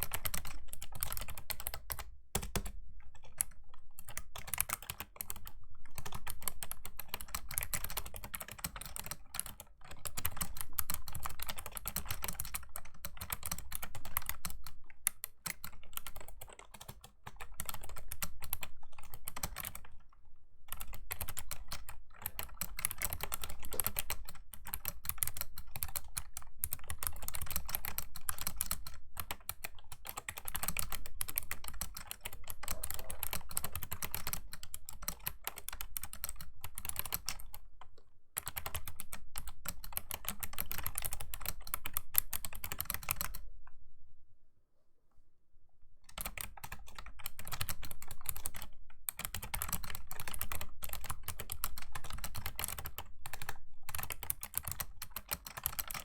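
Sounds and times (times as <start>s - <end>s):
keyboard keystroke clicks: 0.1s - 2.8s.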